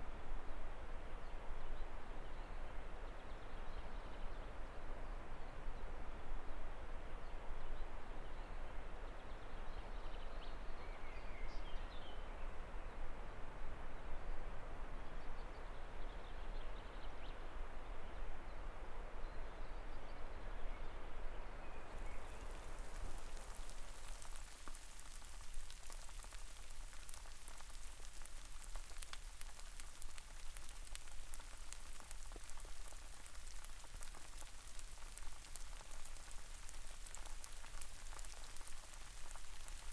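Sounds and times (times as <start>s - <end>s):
rain pattering: 21.8s - 39.9s.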